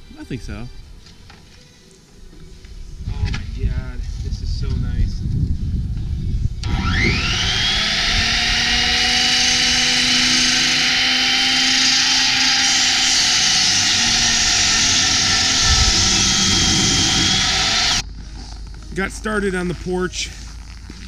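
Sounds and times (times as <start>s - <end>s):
power saw high whine: 6.6s - 18.0s.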